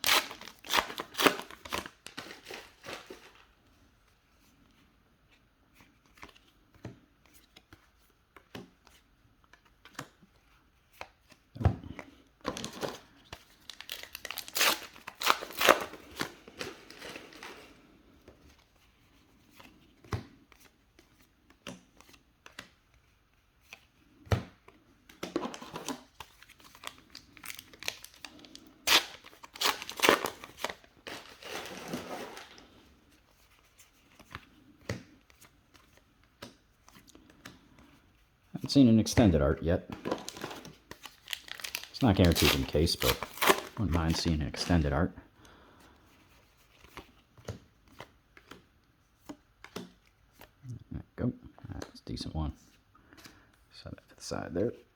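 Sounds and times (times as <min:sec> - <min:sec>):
foil packs tearing and crinkling: 0:00.0 - 0:03.3, 0:13.6 - 0:17.6, 0:26.7 - 0:32.6, 0:40.1 - 0:44.2.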